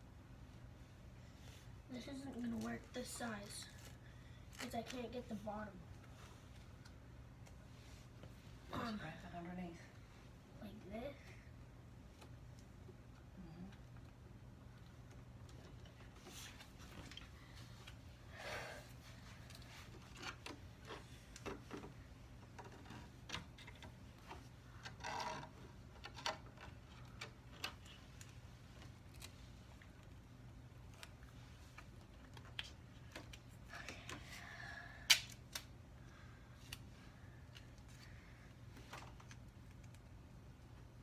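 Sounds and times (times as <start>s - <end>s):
plastic mesh and tape rustling: 19.1s - 30.2s.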